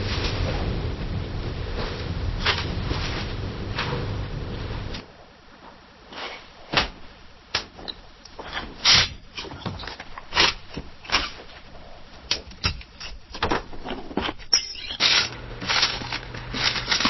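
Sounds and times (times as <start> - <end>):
low rumble: 0.0 - 5.9.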